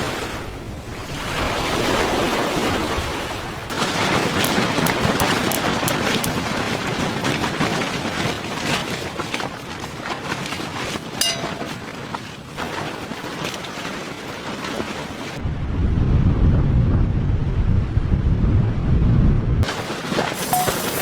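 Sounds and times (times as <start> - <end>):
snowstorm wind: 14.9 - 21.0
wind buffeting microphone: 15.4 - 19.7.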